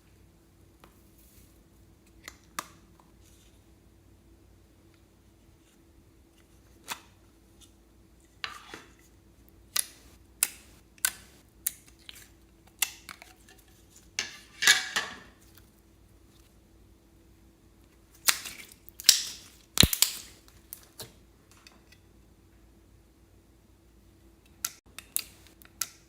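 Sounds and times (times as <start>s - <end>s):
utensils clicking and tapping: 18.3s - 21.7s.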